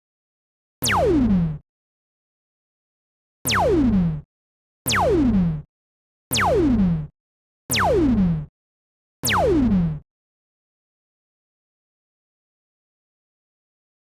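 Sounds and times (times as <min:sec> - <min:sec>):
synthesized laser zap: 0:00.8 - 0:01.3.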